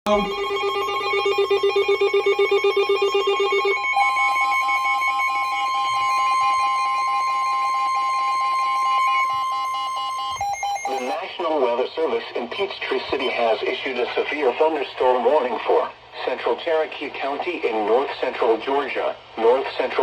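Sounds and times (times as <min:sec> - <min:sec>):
steady attention tone: 0:00.0 - 0:11.2
pulsing warbling alert tone: 0:00.1 - 0:03.8, 0:10.2 - 0:11.2.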